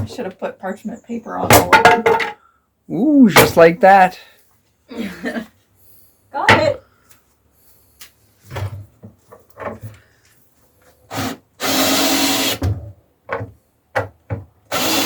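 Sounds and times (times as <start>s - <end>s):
power drill running: 11.1s - 12.6s, 14.7s - 15.0s
wooden knocks and clatter: 13.3s - 14.6s.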